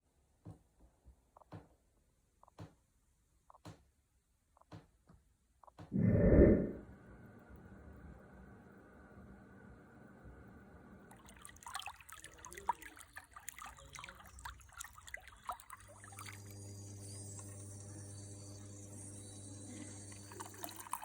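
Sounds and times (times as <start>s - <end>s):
water trickling and dripping: 11.1s - 17.8s.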